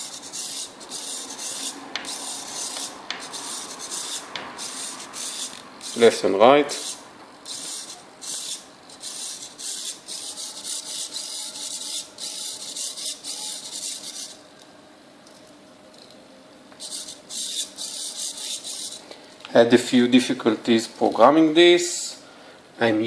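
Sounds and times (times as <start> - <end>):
small servo whirring: 0.0 - 14.4, 16.8 - 19.0.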